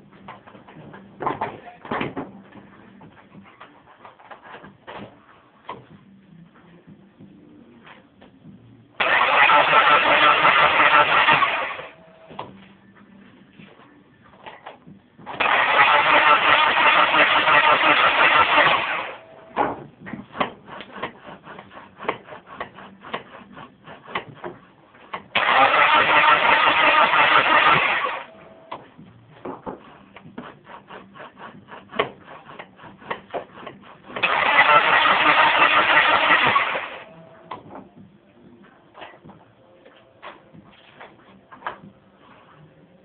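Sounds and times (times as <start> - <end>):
car engine cranking on starter: 9.0 - 11.9, 15.4 - 19.2, 25.4 - 28.3, 34.2 - 37.0.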